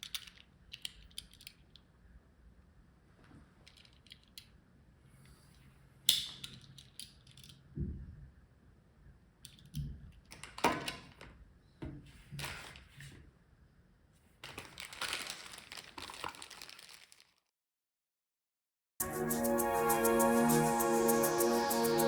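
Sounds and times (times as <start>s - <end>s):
plastic packaging rustling: 14.4s - 17.5s.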